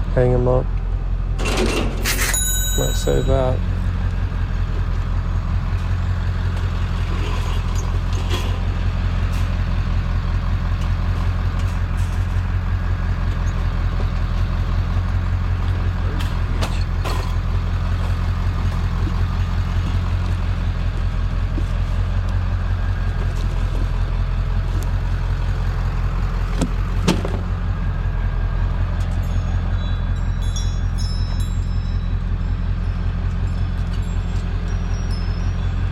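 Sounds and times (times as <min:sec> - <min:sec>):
vehicle engine idling: 0:00.0 - 0:35.9.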